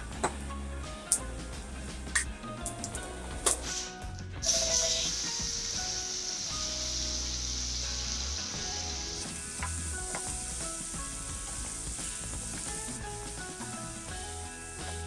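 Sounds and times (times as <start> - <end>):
food sizzling in a pan: 3.5 - 15.0
utensil tapping a pan: 9.6 - 10.5.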